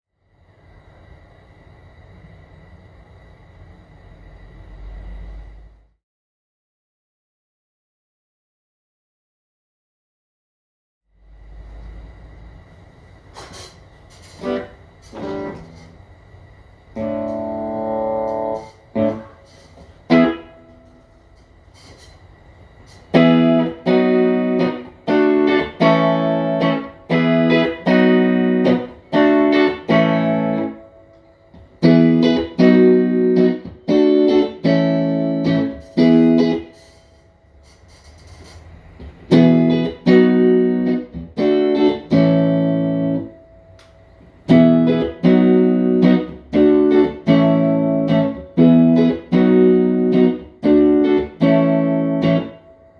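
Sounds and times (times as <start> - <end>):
clean electric guitar chords: 14.4 - 16.0, 17.0 - 19.5, 20.1 - 21.2, 23.1 - 37.0, 39.3 - 52.9.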